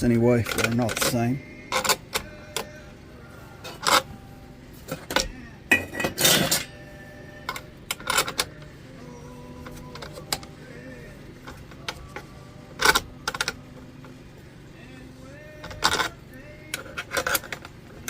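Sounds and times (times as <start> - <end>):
metal clatter: 4.9 - 6.7.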